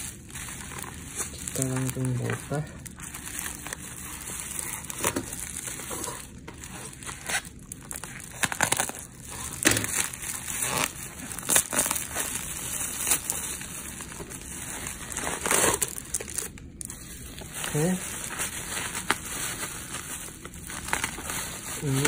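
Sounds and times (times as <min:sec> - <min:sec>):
plastic packing crumpling and tearing: 0:00.0 - 0:22.0.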